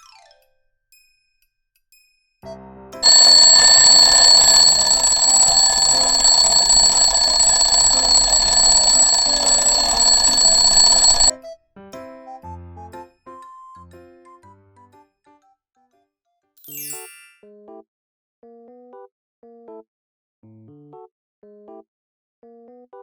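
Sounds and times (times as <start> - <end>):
alarm bell ringing: 3.0 - 11.3.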